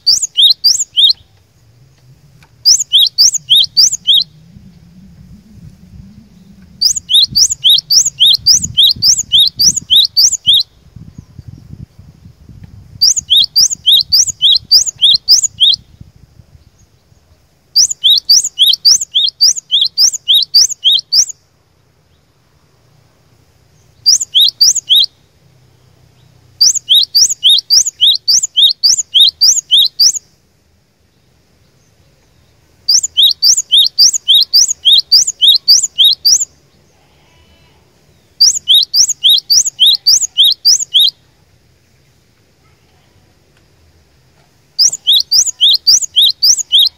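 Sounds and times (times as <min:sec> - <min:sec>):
bird singing two-note phrases: 0:02.6 - 0:05.0, 0:06.0 - 0:10.7.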